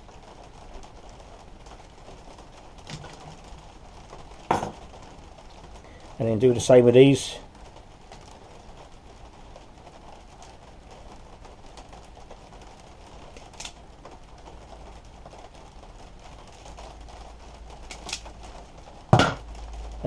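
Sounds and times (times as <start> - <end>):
wire strippers clicking: 17.9 - 18.3.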